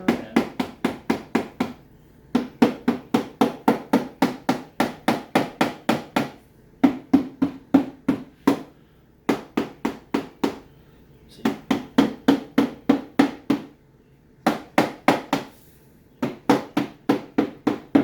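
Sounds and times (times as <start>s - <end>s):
rapid tapping on wooden plug: 0.0s - 8.7s, 11.5s - 13.7s, 16.2s - 18.0s.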